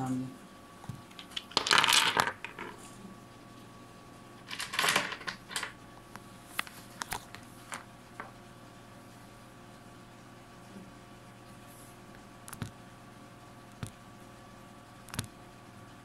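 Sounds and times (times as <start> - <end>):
stones clicking together: 1.1 - 2.7.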